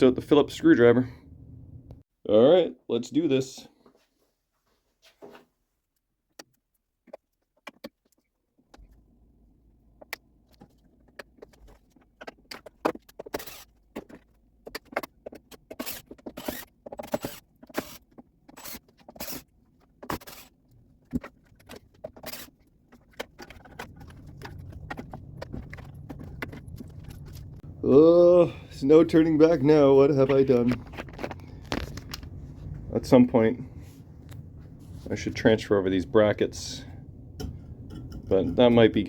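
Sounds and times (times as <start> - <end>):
low hum: 1.0 - 2.0, 23.5 - 39.0
screwdriver and screws clinking: 12.3 - 20.6.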